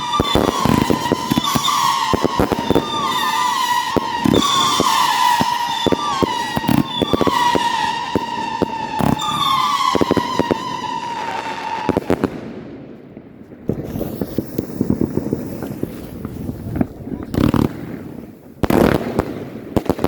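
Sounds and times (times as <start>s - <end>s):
firework whistles: 0.0s - 12.2s, 13.7s - 19.0s
firework bangs: 0.0s - 20.0s.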